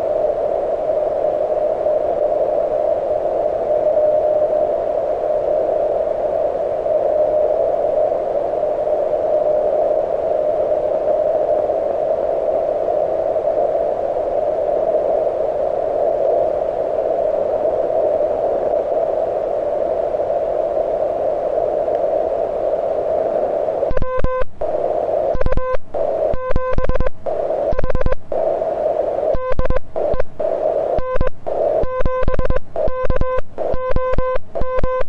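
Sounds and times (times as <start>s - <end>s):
radio receiver static hiss: 23.4s - 35.0s.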